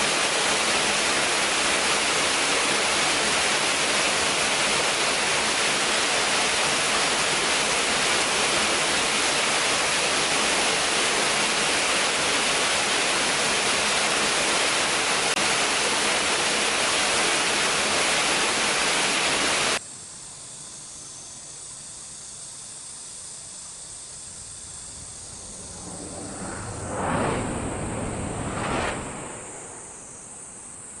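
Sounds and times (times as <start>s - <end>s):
faint high hiss: 0.0s - 31.0s
whooshes: 24.3s - 30.8s.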